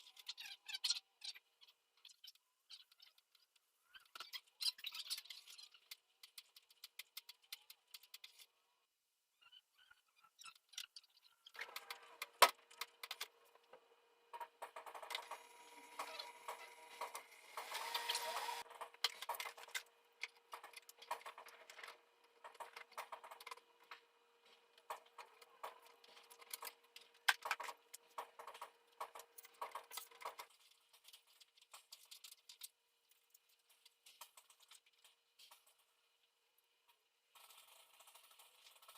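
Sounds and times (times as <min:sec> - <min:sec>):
parts clicking and knocking: 0:10.5 - 0:36.2.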